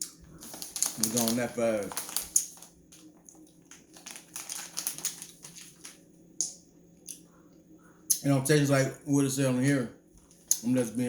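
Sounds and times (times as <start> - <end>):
cotton candy crinkling: 0.0 - 6.0.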